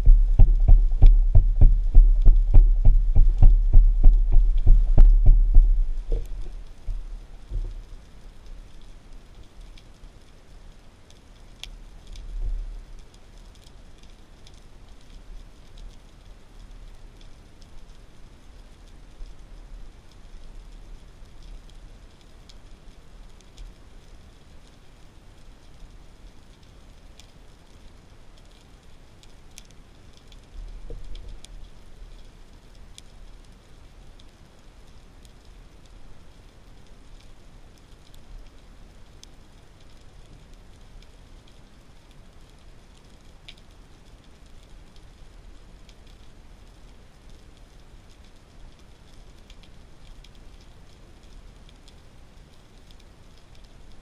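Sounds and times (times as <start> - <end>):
low thump: 0.0 - 7.7
steady low underwater rumble: 0.0 - 8.8
underwater clicks and crackles: 0.0 - 10.4, 11.0 - 54.0
faint hiss: 0.0 - 54.0.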